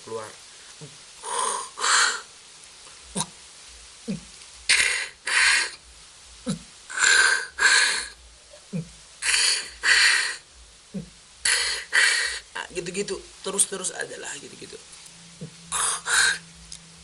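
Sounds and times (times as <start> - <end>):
beatbox hissing: 4.1 - 5.8, 8.8 - 12.4, 15.4 - 16.4.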